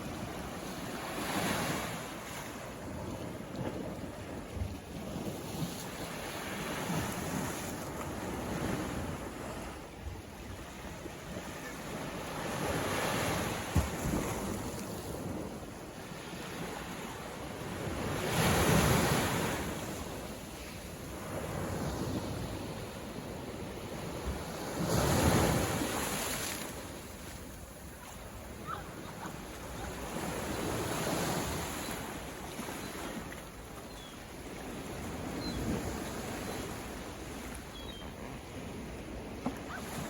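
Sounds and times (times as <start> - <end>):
ocean waves breaking: 10.5 - 40.0.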